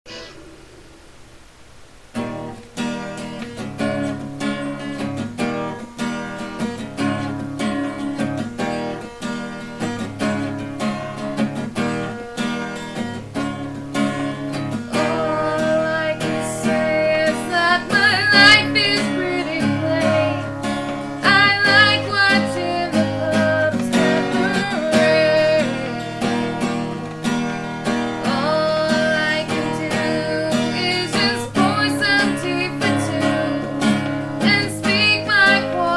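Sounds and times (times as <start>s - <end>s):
acoustic guitar strumming: 0.0s - 35.9s
person singing: 14.9s - 27.0s, 28.2s - 35.9s.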